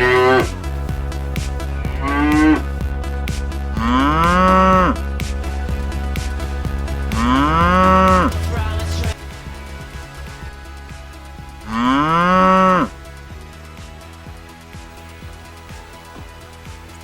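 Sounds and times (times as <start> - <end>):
cow mooing: 3.8 - 5.0, 11.7 - 13.0.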